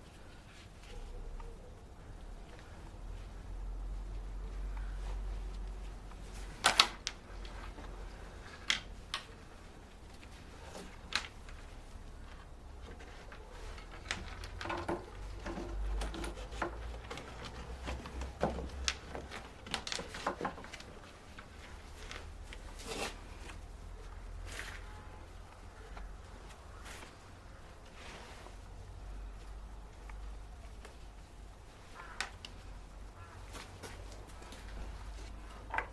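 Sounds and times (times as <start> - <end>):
plastic parts clicking and knocking: 12.9 - 22.6, 33.5 - 35.9.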